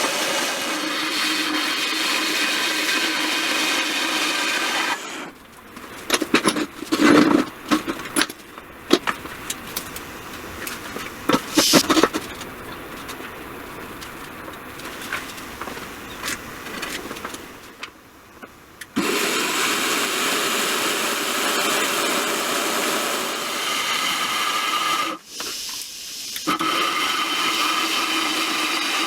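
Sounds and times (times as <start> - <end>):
power saw running: 0.0 - 8.3, 19.0 - 25.2, 26.4 - 29.0.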